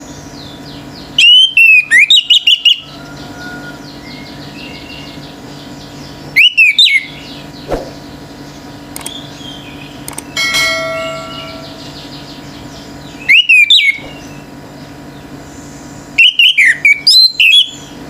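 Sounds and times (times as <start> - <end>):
thrush whistling song: 6.4 - 8.1, 13.2 - 14.4, 16.2 - 17.9
single click: 8.9 - 9.2, 10.1 - 10.3.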